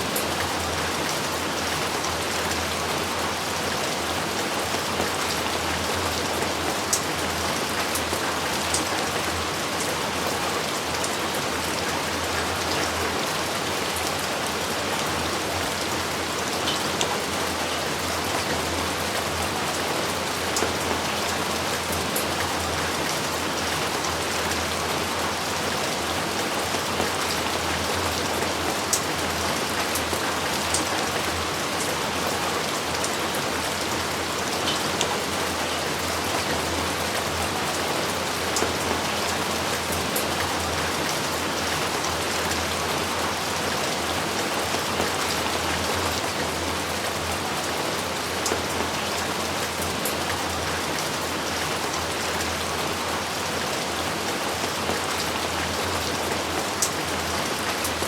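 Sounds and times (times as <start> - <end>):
heavy rain falling: 0.0 - 58.0.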